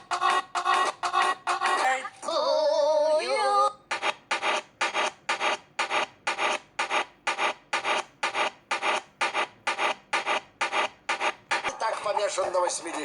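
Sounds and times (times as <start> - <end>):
rhythmic rasping scraping strokes: 0.0 - 2.0
sped-up cartoon singing: 0.0 - 3.9.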